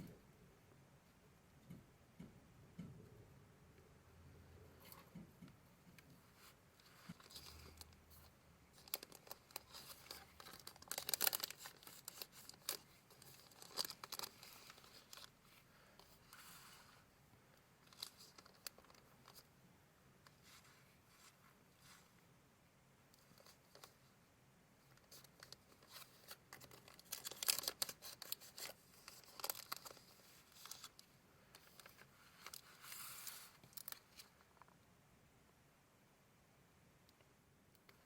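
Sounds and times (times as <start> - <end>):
paper rustling and crinkling: 6.2 - 17.0, 17.8 - 19.5, 25.0 - 34.7.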